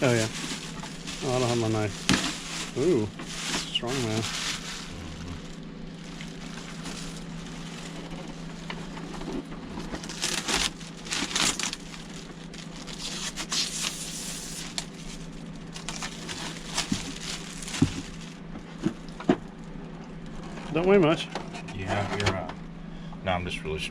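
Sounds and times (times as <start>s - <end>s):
cardboard and plastic crinkling: 0.0s - 19.6s
steady low hum: 0.0s - 23.9s.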